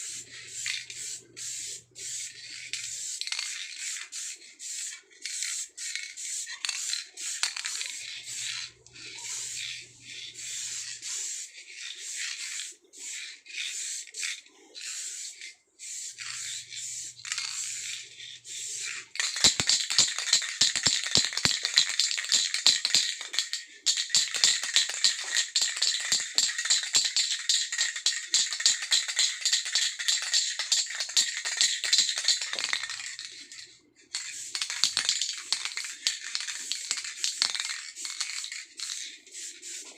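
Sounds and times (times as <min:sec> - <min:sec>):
hiss in short bursts: 0:00.0 - 0:07.8, 0:10.4 - 0:19.0, 0:36.6 - 0:39.9
scratchy rubbing strokes: 0:00.0 - 0:31.6, 0:34.2 - 0:39.9.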